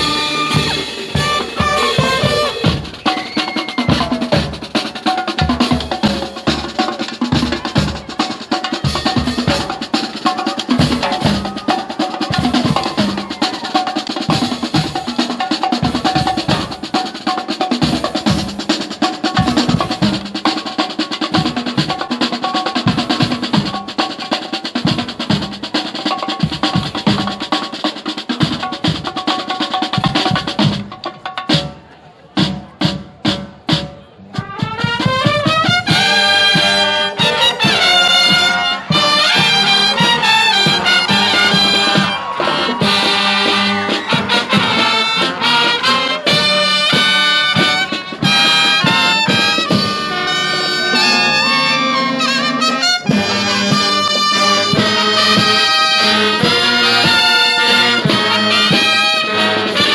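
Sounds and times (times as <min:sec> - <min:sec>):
held instrument notes: 0:00.0 - 0:15.6, 0:34.3 - 0:59.9
snare and bass drums: 0:00.0 - 0:59.9.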